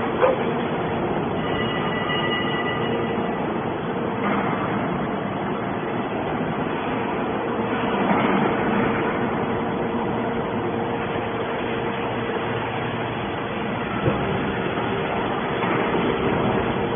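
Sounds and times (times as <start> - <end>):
scrap baler machine running: 6.4 - 16.9.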